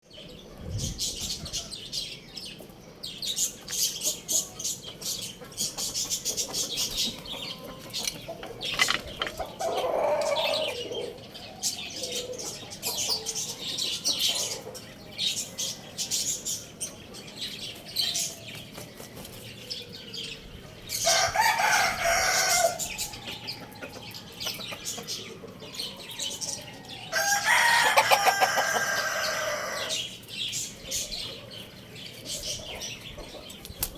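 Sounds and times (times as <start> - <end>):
small birds chirping: 0.0 - 33.9
rooster clucking: 6.0 - 11.1, 27.2 - 30.0
rooster crowing: 9.4 - 11.2, 21.0 - 23.9, 25.6 - 30.0.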